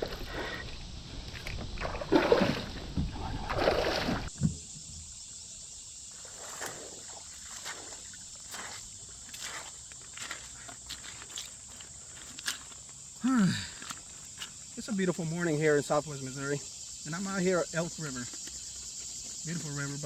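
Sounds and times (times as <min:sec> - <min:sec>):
water splashing around kayak: 0:00.0 - 0:05.2, 0:06.0 - 0:12.8.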